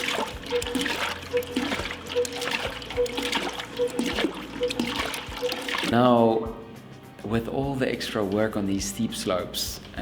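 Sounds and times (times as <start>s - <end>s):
liquid splashing and trickling: 0.0s - 6.1s.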